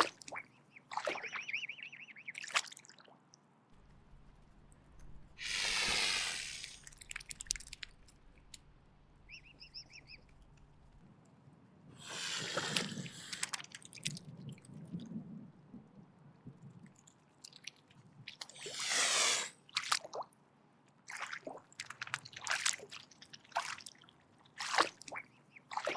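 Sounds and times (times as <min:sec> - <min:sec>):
swan hissing: 0:05.1 - 0:08.6, 0:12.0 - 0:13.6, 0:18.6 - 0:19.6
wet clicks: 0:06.6 - 0:11.0.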